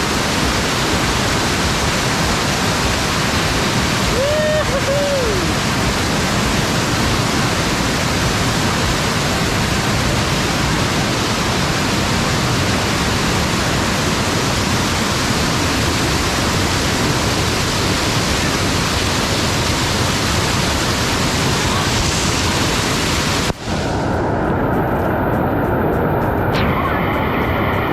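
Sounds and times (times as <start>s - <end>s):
waterfall rushing: 0.0s - 27.9s.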